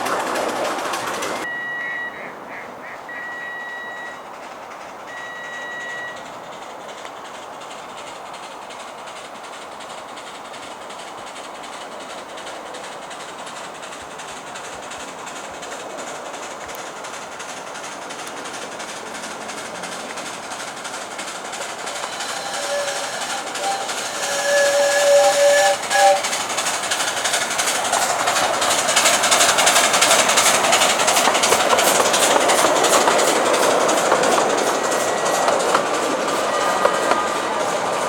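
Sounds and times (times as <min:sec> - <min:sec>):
train wheels running on track: 0:00.0 - 0:38.0
miniature train whistle toots: 0:01.4 - 0:04.4, 0:05.1 - 0:06.3, 0:21.5 - 0:28.5, 0:29.3 - 0:38.0.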